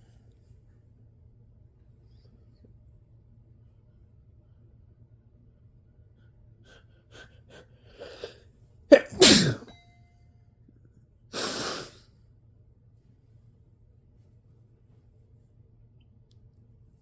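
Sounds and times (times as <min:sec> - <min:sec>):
catching breaths: 0:06.6 - 0:09.7
woman sneezing: 0:08.9 - 0:09.7, 0:11.4 - 0:12.0.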